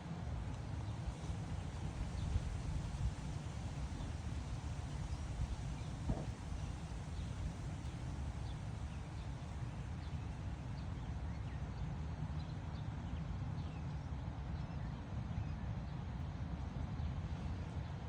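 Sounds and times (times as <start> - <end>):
wind buffeting microphone: 0.9 - 10.5.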